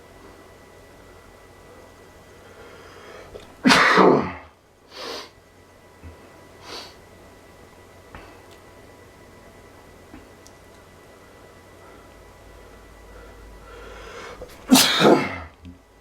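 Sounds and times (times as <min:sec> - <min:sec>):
man sneezing: 0:03.6 - 0:05.3, 0:14.7 - 0:15.5.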